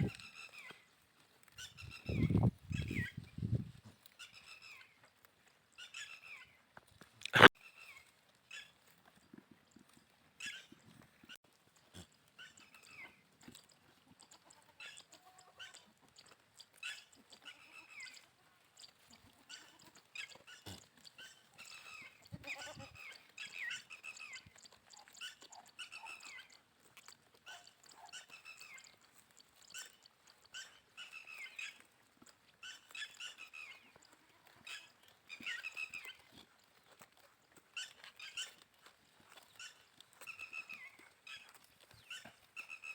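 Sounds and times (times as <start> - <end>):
goats bleating: 14.2 - 15.8, 19.0 - 20.8, 22.2 - 23.0.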